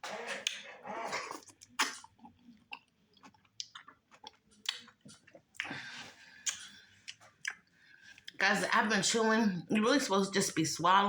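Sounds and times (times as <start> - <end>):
wet chewing and lip-smacking: 1.3 - 5.8, 6.4 - 8.4
sharp wet mouth clicks: 4.6 - 4.9, 6.4 - 7.7.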